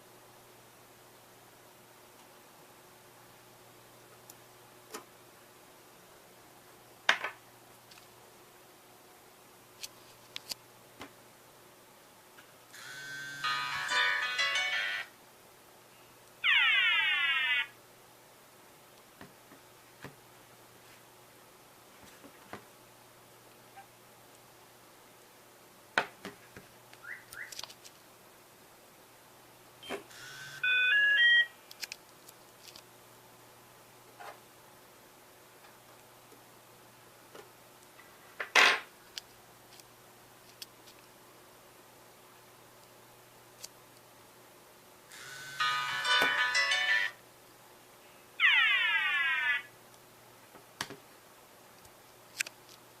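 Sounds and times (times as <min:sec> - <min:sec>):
mobile phone ringtone: 0:12.8 - 0:15.1, 0:30.1 - 0:31.6, 0:45.2 - 0:47.2
phone melody of rising beeps: 0:30.2 - 0:31.5.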